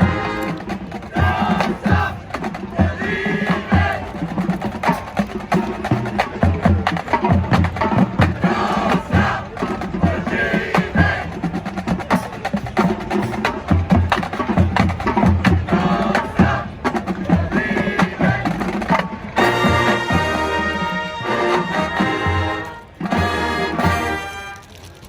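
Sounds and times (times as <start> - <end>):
brass held chords: 0.0 - 1.7, 19.4 - 24.8
drumline rapid percussion: 0.0 - 24.5.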